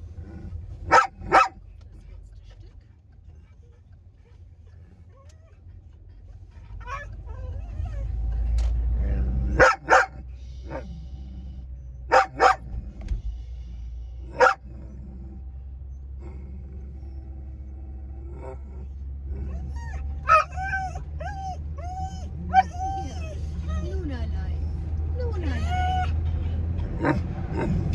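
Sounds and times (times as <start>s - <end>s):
low rumble of moving car: 0.0s - 27.9s
dog barking: 0.8s - 1.6s, 9.5s - 10.9s, 12.1s - 12.7s, 14.3s - 14.7s, 20.2s - 20.8s.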